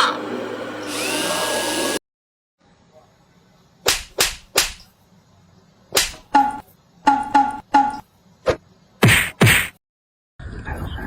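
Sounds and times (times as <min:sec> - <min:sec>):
whip-like smacks: 0:03.9 - 0:04.8.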